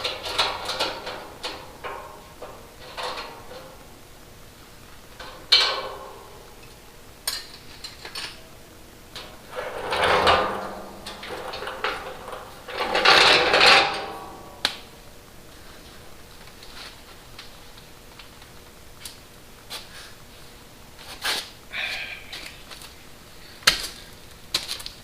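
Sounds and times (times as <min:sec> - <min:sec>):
rattling ringing metal: 0:00.0 - 0:03.9, 0:05.2 - 0:06.6, 0:09.2 - 0:14.6
metal clank ringing: 0:05.2 - 0:06.5, 0:09.2 - 0:14.6.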